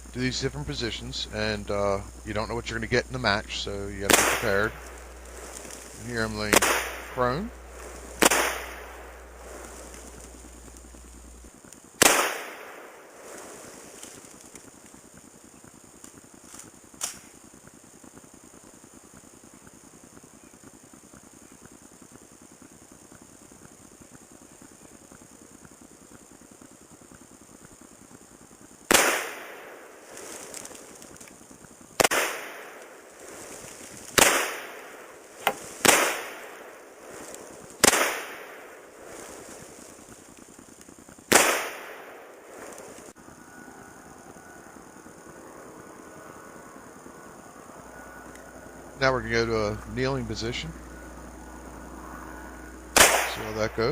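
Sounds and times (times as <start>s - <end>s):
rifle shot: 3.7s - 10.5s, 12.0s - 14.0s, 17.0s - 17.4s, 28.9s - 30.8s, 32.0s - 33.0s, 34.2s - 39.2s, 41.3s - 43.0s, 53.0s - 53.8s
faint sharp crack: 16.0s - 17.4s.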